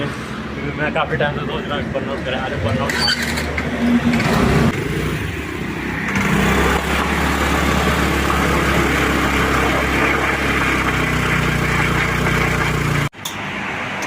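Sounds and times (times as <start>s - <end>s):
scooter engine revving high: 4.0s - 13.2s.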